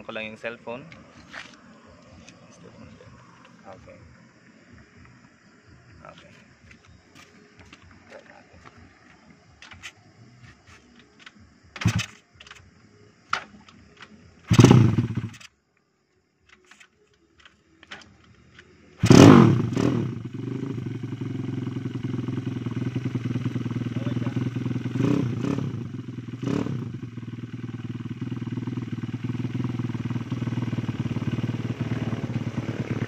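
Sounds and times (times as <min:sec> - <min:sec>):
motorcycle engine starting and idling: 0:11.1 - 0:12.7, 0:13.3 - 0:15.5, 0:16.4 - 0:33.0.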